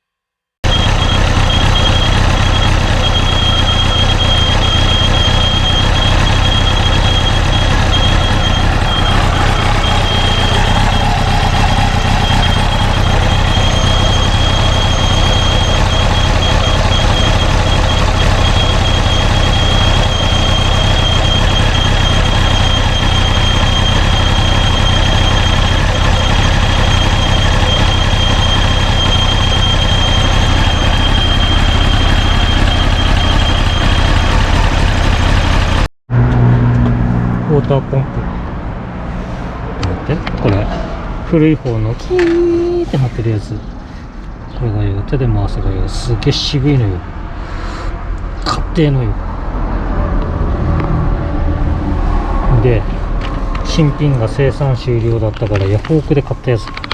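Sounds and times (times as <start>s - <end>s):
motorcycle engine running: 0.6s - 37.6s, 49.4s - 56.9s
high-pitched metallic whine: 0.6s - 56.9s.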